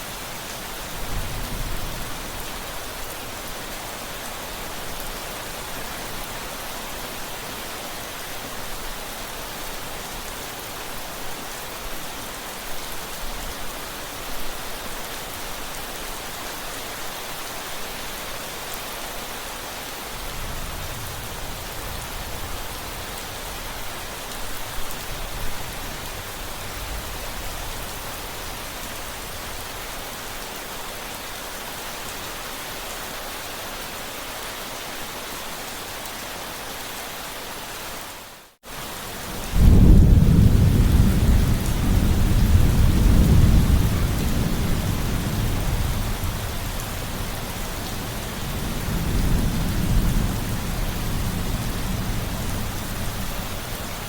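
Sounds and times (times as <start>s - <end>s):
thunder rumbling: 39.2s - 54.0s.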